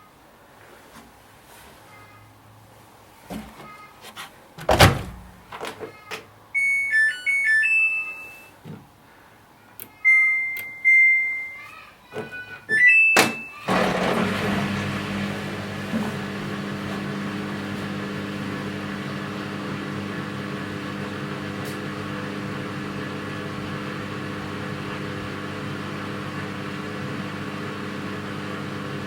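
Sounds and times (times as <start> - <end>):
washing machine door thunk: 4.6 - 5.3
electronic beep melody: 6.6 - 8.5, 10.0 - 11.6
long button beeps: 6.6 - 8.5, 10.0 - 11.7
washing machine running: 13.6 - 29.0.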